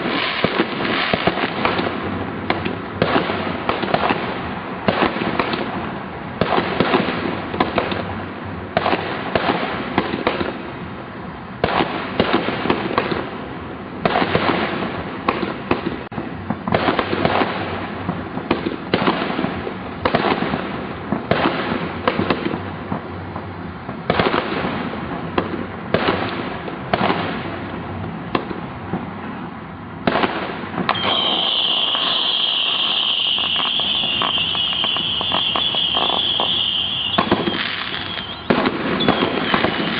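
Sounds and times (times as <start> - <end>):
fireworks banging: 0.0 - 39.9
fireworks crackling: 0.0 - 39.9
high-pitched whistle: 30.9 - 39.4.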